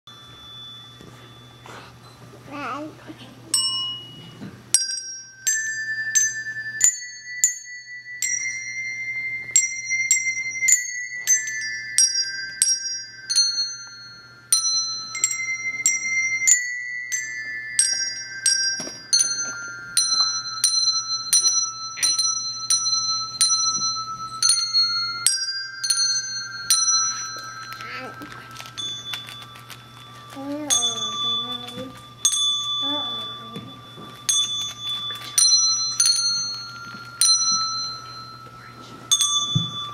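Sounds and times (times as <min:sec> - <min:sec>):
handbells playing a melody: 0:00.0 - 0:39.9.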